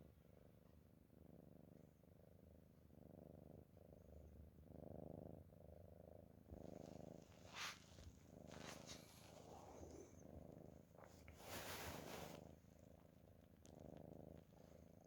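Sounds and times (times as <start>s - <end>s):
cat snoring: 4.6s - 13.0s, 13.6s - 15.0s.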